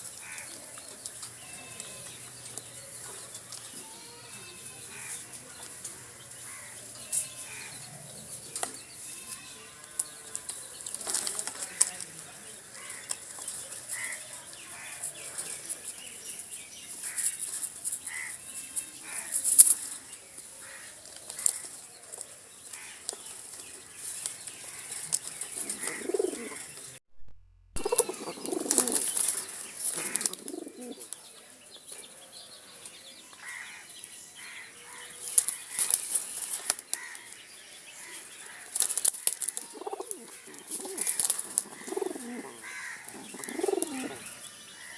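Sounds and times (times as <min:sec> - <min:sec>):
pigeon cooing: 0:25.6 - 0:26.7, 0:27.8 - 0:29.2, 0:30.0 - 0:31.1, 0:39.7 - 0:44.2
pigeons fluttering wings: 0:27.8 - 0:30.6, 0:38.8 - 0:42.5.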